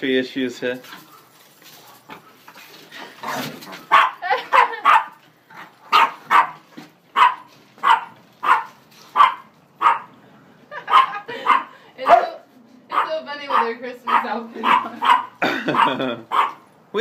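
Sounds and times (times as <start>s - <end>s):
dog barking: 3.9s - 5.2s, 5.9s - 6.6s, 7.2s - 10.1s, 10.9s - 16.6s.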